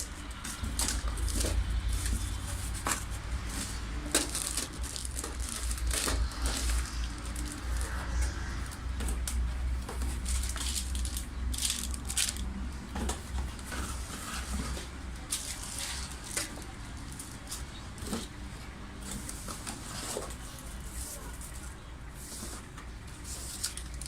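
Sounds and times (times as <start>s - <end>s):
packaging rustling and crinkling: 0.0s - 18.4s.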